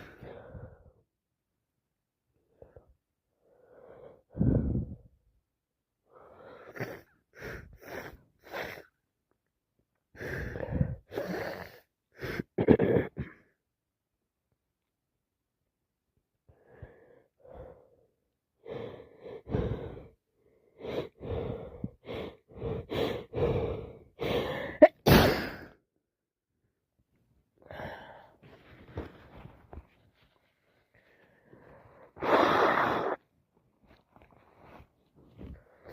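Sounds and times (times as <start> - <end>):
gasping breaths: 10.1 - 12.5, 16.5 - 24.8
person sneezing: 24.7 - 25.8, 32.2 - 33.2
person sniffing: 32.1 - 33.2.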